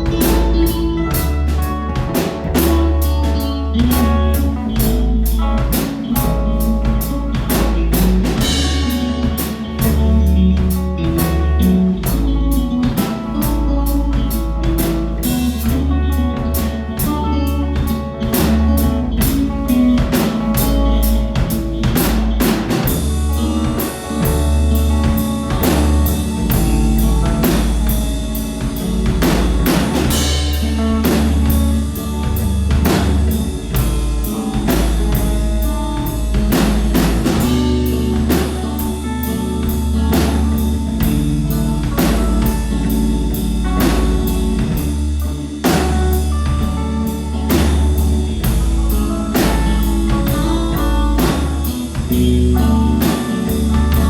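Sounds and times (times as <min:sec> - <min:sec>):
drum kit beat: 0:00.0 - 0:54.0
live rock band playing: 0:00.0 - 0:54.0
low bass notes: 0:00.0 - 0:54.0.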